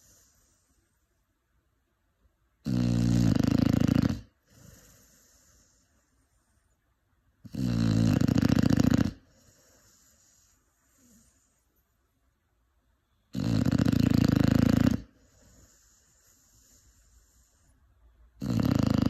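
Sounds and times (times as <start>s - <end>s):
puppy snoring: 0.0s - 0.7s, 2.6s - 6.1s, 7.4s - 11.6s, 13.3s - 17.7s, 18.4s - 19.0s
faint dog breath: 0.0s - 1.3s, 4.4s - 6.8s, 9.1s - 12.0s, 15.0s - 18.2s.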